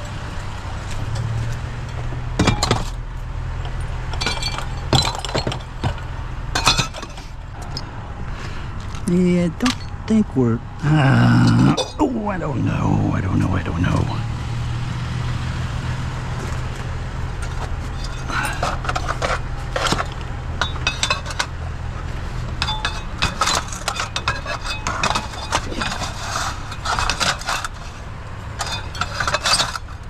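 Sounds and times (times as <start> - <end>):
steady low hum: 0.0 - 30.0
metal scrap clanking: 0.9 - 7.9, 16.3 - 30.0.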